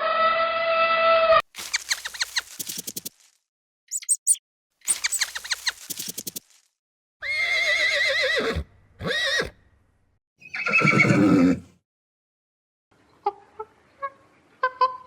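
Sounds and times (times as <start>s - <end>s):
high chirps: 1.6s - 3.3s, 3.9s - 6.6s
short pulsed calls: 3.9s - 6.4s
horse whinnying: 7.2s - 9.6s, 10.4s - 11.7s.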